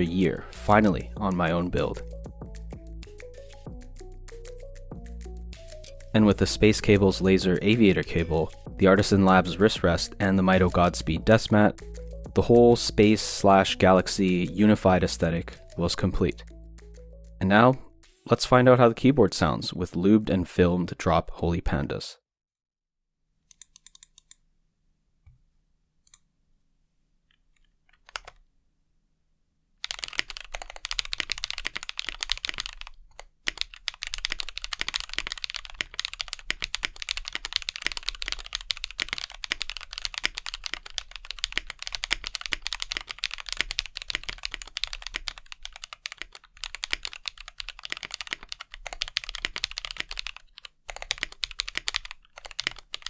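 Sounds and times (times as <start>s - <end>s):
typing on mechanical keyboard: 28.0s - 28.4s, 29.8s - 53.0s.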